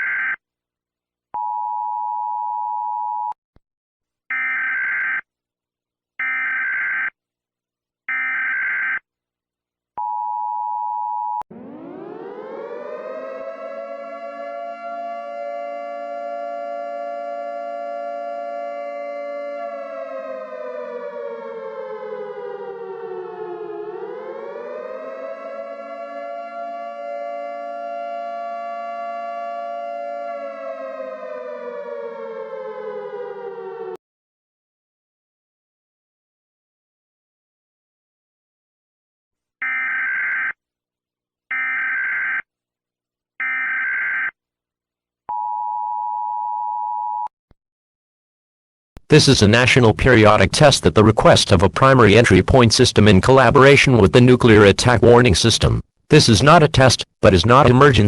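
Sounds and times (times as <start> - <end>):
civil defense siren: 11.5 - 34.0, 39.6 - 40.6, 43.4 - 44.3.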